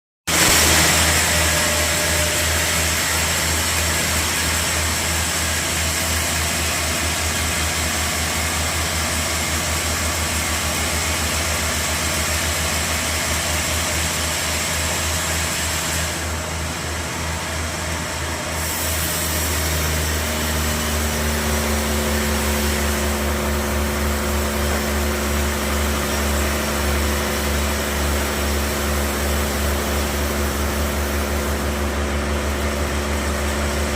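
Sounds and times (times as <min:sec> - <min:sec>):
pitched whine: 0:00.3 - 0:12.1
sawmill saw cutting log: 0:00.3 - 0:33.9.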